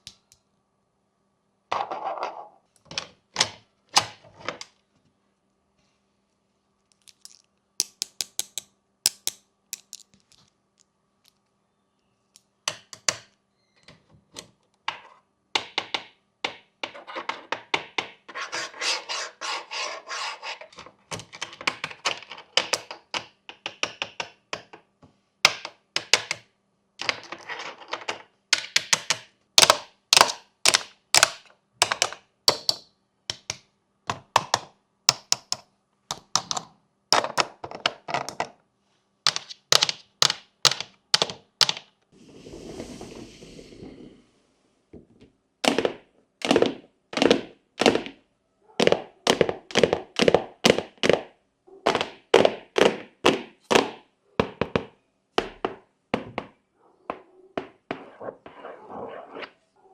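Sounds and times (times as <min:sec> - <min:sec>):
hands rubbing textures: 0:57.9 - 0:59.6.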